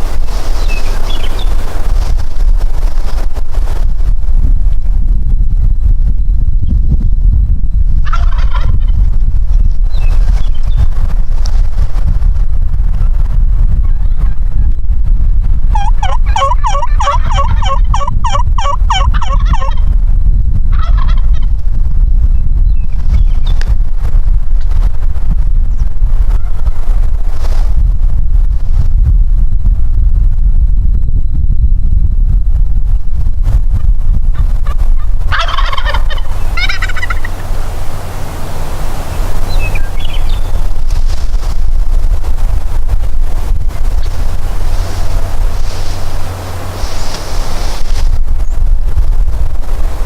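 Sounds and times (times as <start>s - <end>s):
wind rumble on microphone: 0.0s - 50.0s
turkey gobbling: 8.0s - 9.0s, 15.7s - 19.9s, 20.7s - 21.5s, 34.3s - 38.3s.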